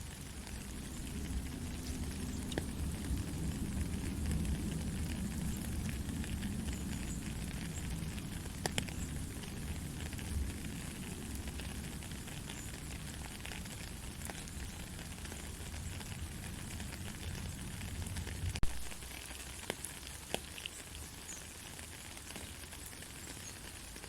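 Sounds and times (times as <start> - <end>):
soft rain falling: 0.0 - 24.0
low rumble: 0.2 - 19.0
sharp drip ticks: 0.3 - 24.0.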